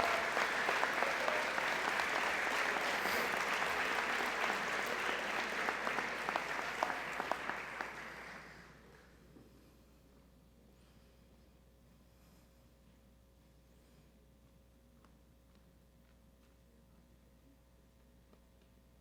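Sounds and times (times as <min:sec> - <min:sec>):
audience applauding: 0:00.0 - 0:09.0.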